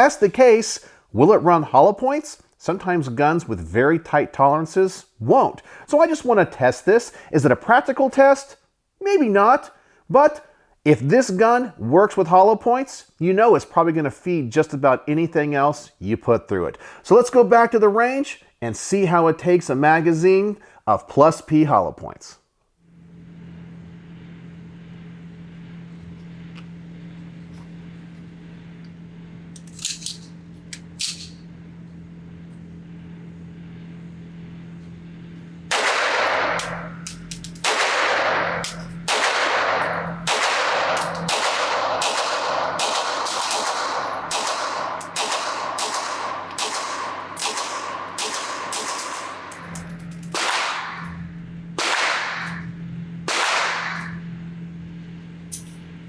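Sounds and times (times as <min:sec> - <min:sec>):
steady low hum: 0:22.7 - 0:56.0
pistol shots: 0:35.7 - 0:49.7, 0:50.3 - 0:51.1, 0:51.8 - 0:52.6, 0:53.3 - 0:54.2.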